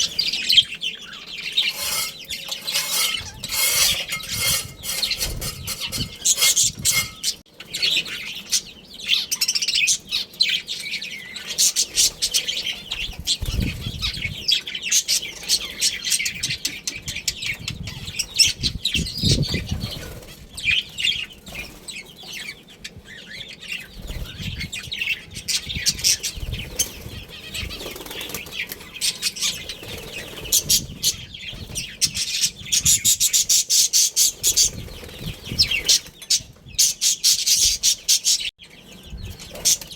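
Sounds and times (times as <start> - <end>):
budgerigars chattering and chirping: 0.0 - 39.9
wings fluttering: 1.6 - 7.4, 26.2 - 30.8.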